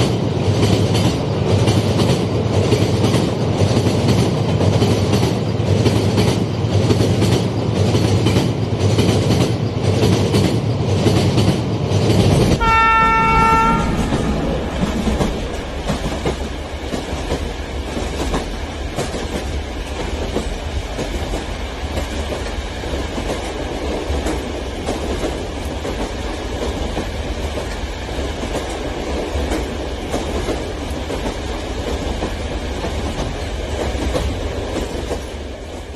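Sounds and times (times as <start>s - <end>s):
train rumble: 0.0s - 35.9s
train wheels clickety-clack: 0.0s - 35.9s
train horn blast: 12.6s - 15.4s.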